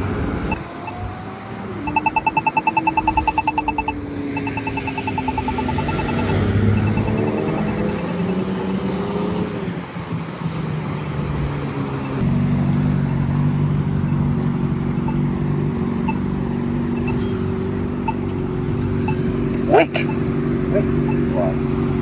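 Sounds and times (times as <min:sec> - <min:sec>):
traffic engines humming: 0:00.0 - 0:22.0
crosswalk button rapid ticking: 0:01.9 - 0:08.8, 0:16.9 - 0:22.0
crosswalk slow locator tick: 0:01.9 - 0:08.8, 0:11.3 - 0:22.0.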